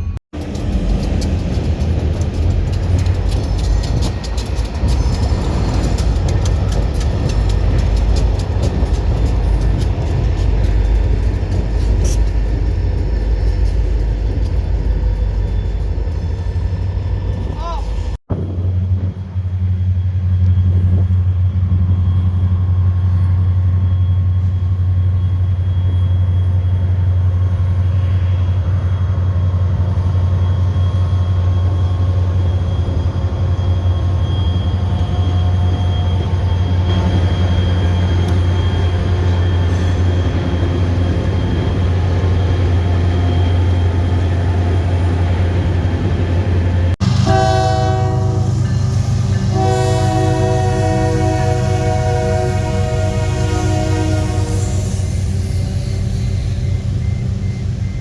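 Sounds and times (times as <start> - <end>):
train rumbling: 0.0 - 58.0
train horn blasts: 47.0 - 48.7, 49.3 - 55.8.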